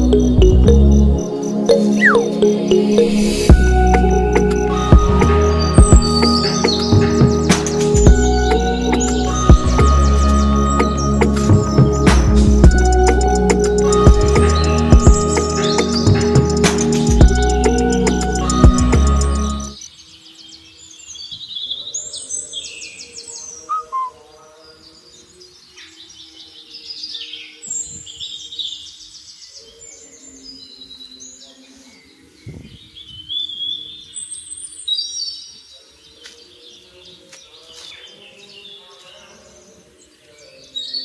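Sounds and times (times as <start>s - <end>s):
music: 0.0s - 19.8s
birds chirping and twittering: 0.0s - 41.0s.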